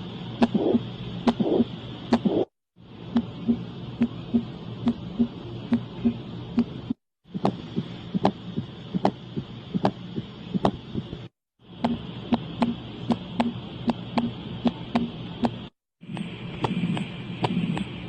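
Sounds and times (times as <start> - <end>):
lub-dub heartbeat: 0.4 - 2.5, 3.2 - 11.2.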